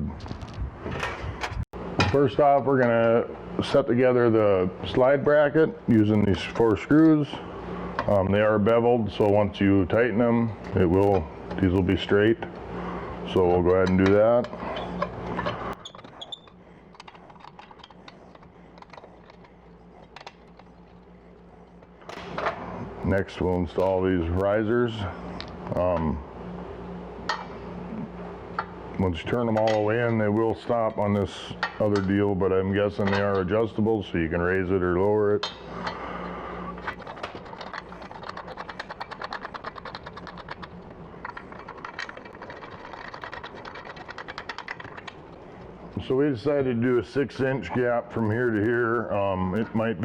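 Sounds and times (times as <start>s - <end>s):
faint low hum: 0.0s - 50.0s
screws and metal parts clicking: 14.8s - 21.1s, 36.8s - 45.5s.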